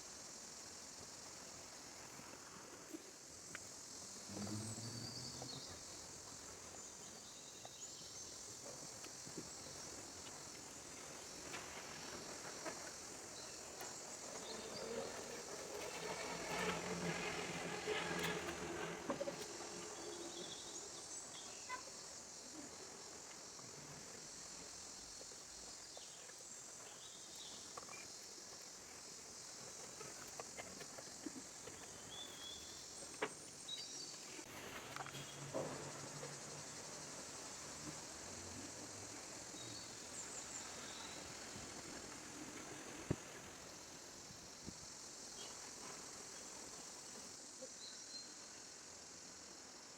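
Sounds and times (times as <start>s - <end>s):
insect chorus: 0.0s - 49.9s.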